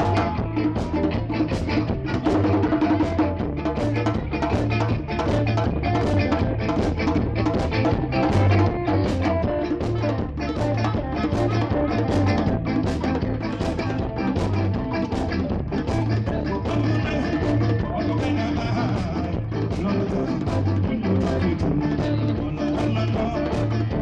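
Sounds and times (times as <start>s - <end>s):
live band playing: 0.0s - 24.0s.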